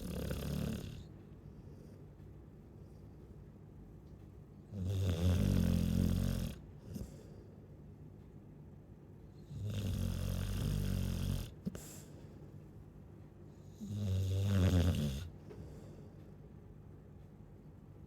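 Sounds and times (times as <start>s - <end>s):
dog snoring: 0.0s - 1.1s, 4.7s - 7.2s, 9.4s - 12.0s, 13.6s - 15.4s
quiet breathing: 6.8s - 7.8s, 11.6s - 12.7s, 15.4s - 16.4s.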